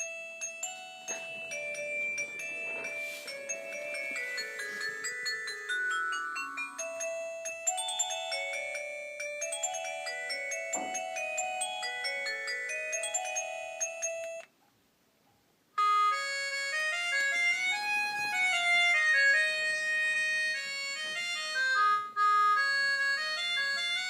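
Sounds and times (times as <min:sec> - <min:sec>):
polyphonic ringtone: 0:00.0 - 0:14.4, 0:15.8 - 0:24.0.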